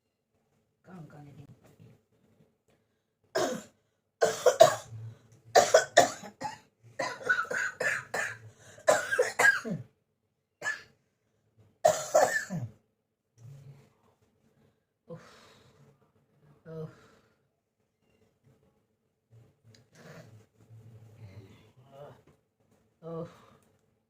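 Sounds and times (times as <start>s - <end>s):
person coughing: 3.4s - 5.0s, 5.6s - 9.8s, 11.8s - 12.7s.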